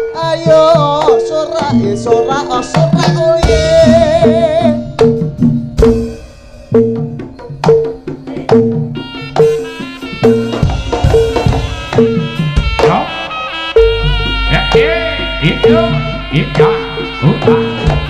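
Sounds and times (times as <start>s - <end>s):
repeating two-note pitched pattern: 0.0s - 18.0s
wavering high melody: 0.0s - 18.0s
hand drum strokes: 0.2s - 13.1s.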